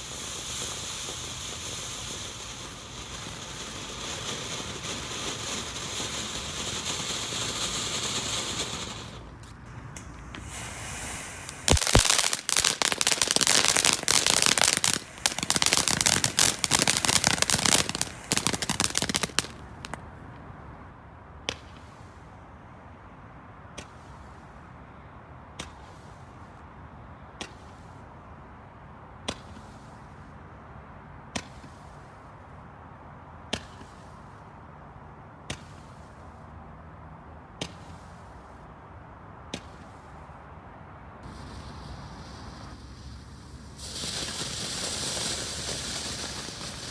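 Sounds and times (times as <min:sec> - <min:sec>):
fireworks popping: 0:00.0 - 0:20.0, 0:41.2 - 0:46.9
fireworks crackling: 0:00.0 - 0:20.2, 0:41.2 - 0:46.9.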